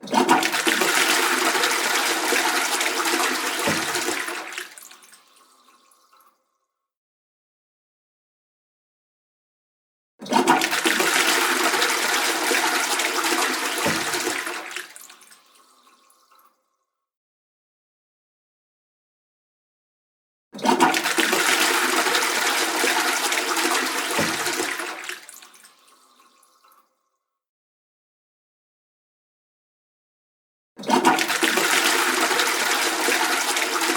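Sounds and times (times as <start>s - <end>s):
toilet flushing: 0.0s - 6.1s, 10.2s - 16.4s, 20.6s - 26.7s, 30.8s - 33.9s.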